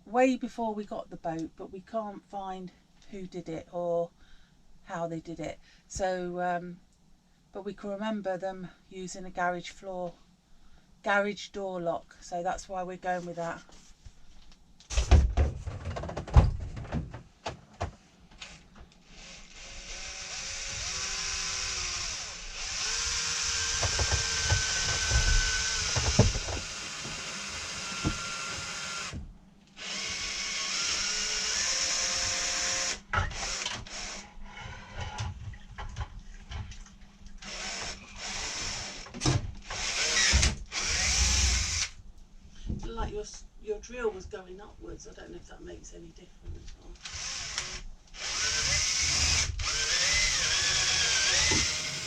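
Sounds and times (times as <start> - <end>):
electric drill boring: 19.1 - 29.2, 29.8 - 34.3, 37.4 - 41.9, 47.0 - 52.0.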